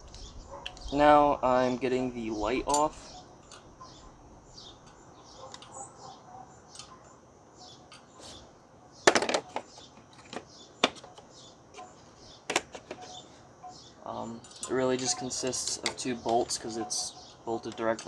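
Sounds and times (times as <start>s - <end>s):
faint birds chirping: 0.0s - 18.0s
hand tools clinking on metal: 2.3s - 4.0s, 4.7s - 7.2s, 12.6s - 18.0s.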